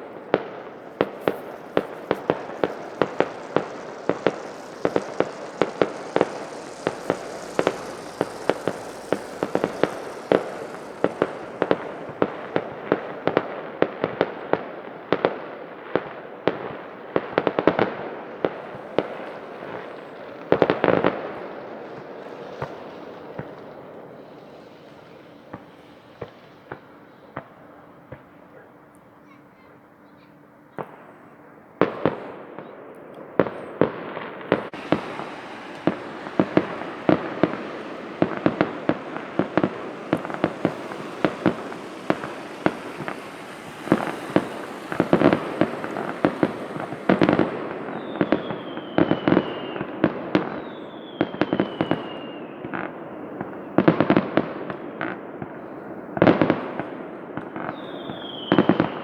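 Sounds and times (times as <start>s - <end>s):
high hiss: 0.0s - 14.8s, 16.8s - 28.0s, 34.4s - 52.4s
falling firework whistles: 0.0s - 28.8s, 30.8s - 59.0s
fireworks bangs and crackling: 0.0s - 28.9s, 30.7s - 59.0s.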